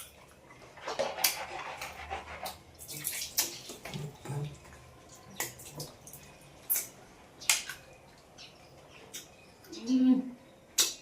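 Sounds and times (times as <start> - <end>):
wet eating smacks and clicks: 2.4 - 4.1.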